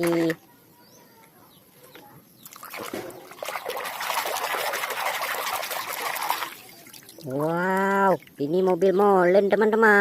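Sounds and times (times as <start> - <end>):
water trickling and splashing: 0.0 - 0.4, 2.4 - 9.6.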